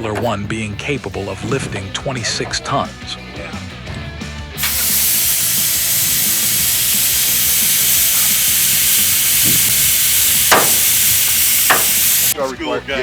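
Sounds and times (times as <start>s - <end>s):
compressed air hissing: 4.6s - 12.4s.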